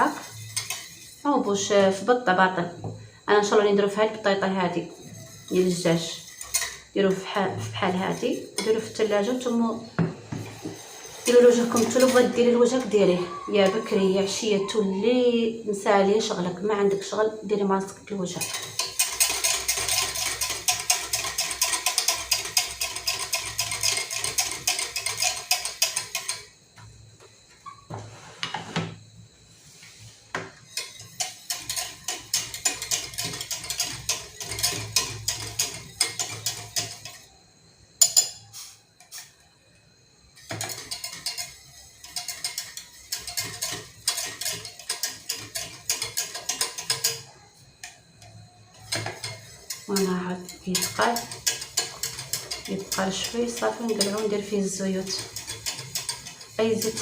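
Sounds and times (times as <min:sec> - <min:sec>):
spoon scraping against pot: 0:00.0 - 0:02.4, 0:03.4 - 0:15.0, 0:17.9 - 0:26.5, 0:30.4 - 0:37.4, 0:38.0 - 0:39.5, 0:40.3 - 0:57.0.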